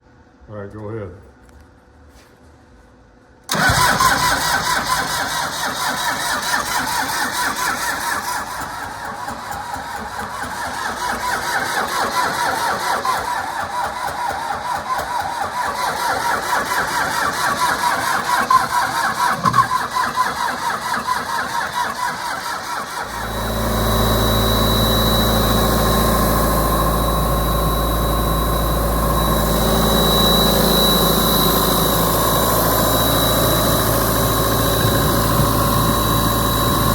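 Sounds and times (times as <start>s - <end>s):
air compressor engine running: 3.5s - 36.9s
thin high whine: 23.0s - 36.9s.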